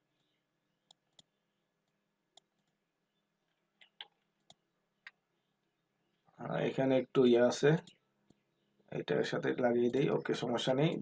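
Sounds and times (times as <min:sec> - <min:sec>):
computer mouse clicks: 0:03.8 - 0:05.2.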